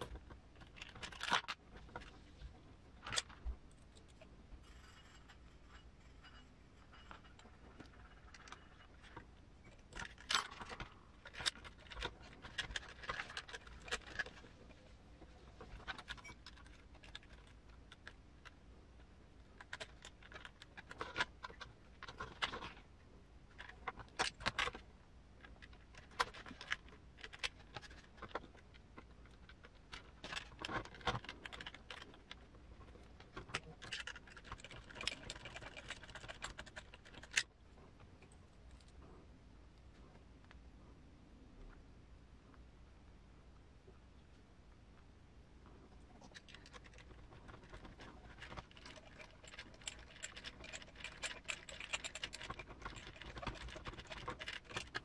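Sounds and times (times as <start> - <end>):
small metal parts clinking: 33.5 - 37.4, 46.3 - 55.0.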